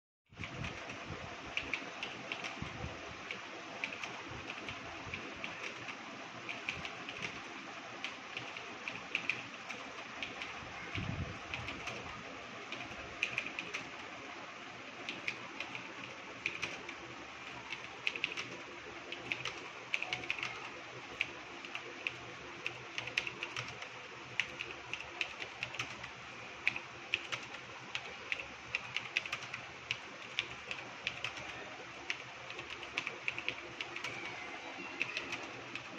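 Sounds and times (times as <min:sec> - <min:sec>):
keyboard typing: 0:00.4 - 0:14.1, 0:15.0 - 0:35.9.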